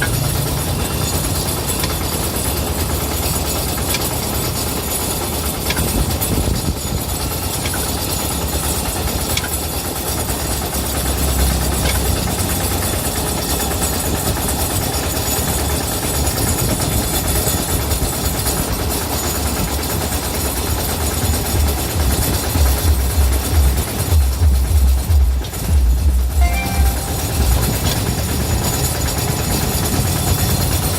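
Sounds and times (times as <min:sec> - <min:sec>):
engine low rumble: 0:10.7 - 0:13.9, 0:21.5 - 0:30.9.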